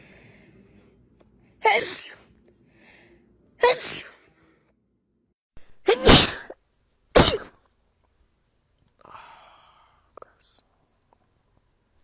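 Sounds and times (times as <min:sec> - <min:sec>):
person sneezing: 0:01.7 - 0:02.2, 0:03.6 - 0:04.1, 0:05.9 - 0:06.6, 0:07.2 - 0:07.5.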